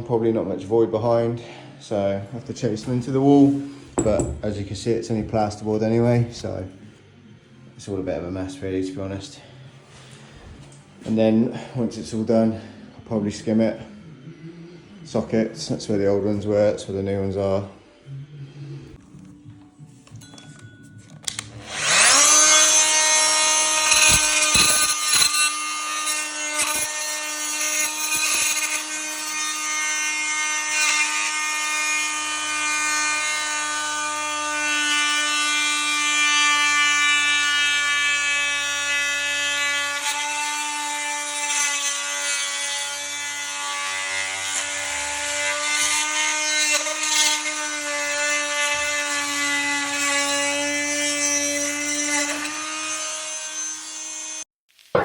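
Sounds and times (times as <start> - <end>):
core drill boring through wall: 21.2 - 54.5.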